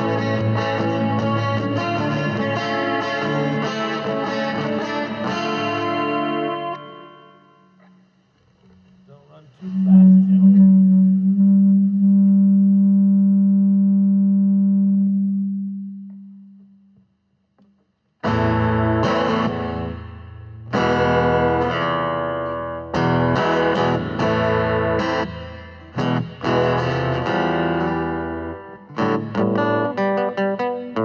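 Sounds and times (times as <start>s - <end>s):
distorted electric guitar chords: 0.0s - 17.0s, 18.2s - 31.0s
low tone: 6.6s - 17.0s.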